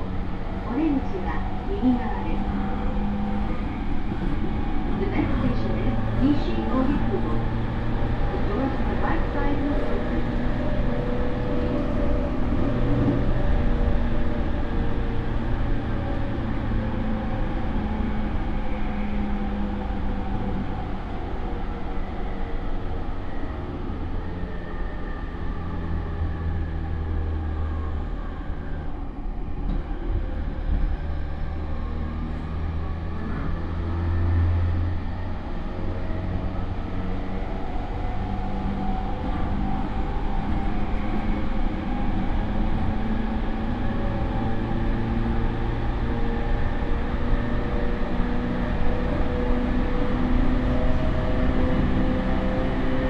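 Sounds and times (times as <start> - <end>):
train wheels rumbling on rails: 0.0 - 53.0.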